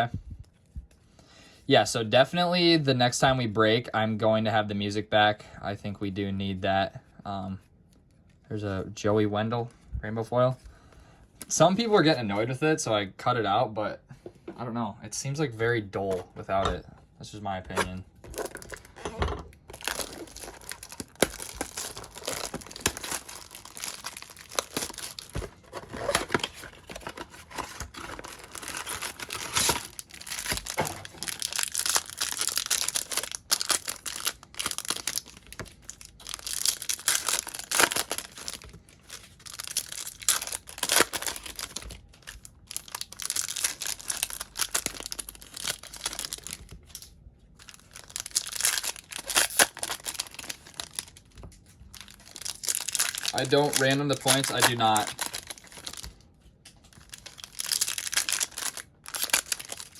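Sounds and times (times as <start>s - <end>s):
card packs tearing open: 17.7s - 19.0s, 19.6s - 51.3s, 51.9s - 56.1s, 56.9s - 59.9s
plastic wrappers crinkling: 17.7s - 59.9s.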